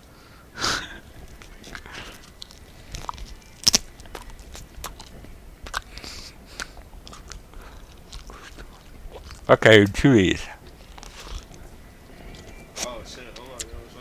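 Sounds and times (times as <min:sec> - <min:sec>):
dried peppers crunching: 0:00.8 - 0:14.0.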